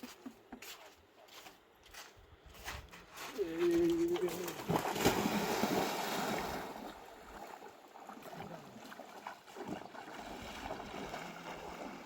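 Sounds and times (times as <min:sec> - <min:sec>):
light water splashes: 0:03.6 - 0:12.0.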